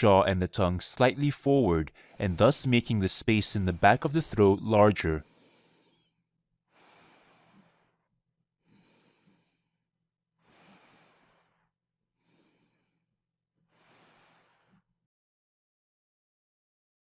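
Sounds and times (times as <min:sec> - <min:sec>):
person breathing while sleeping: 0:01.9 - 0:02.5, 0:05.2 - 0:14.9.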